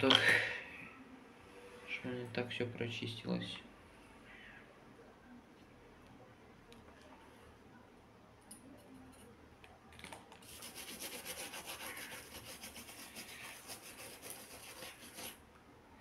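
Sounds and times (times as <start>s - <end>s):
fast scratchy rubbing: 10.4s - 15.4s.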